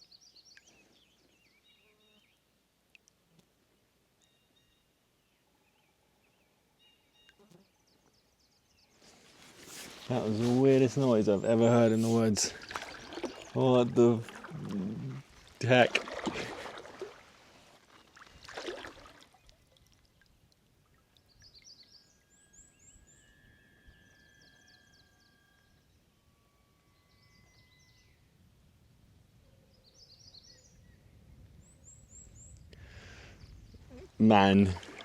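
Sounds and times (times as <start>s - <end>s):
watery rush: 10.0s - 19.4s, 34.4s - 35.0s
thin steady whistling tones: 21.4s - 28.4s.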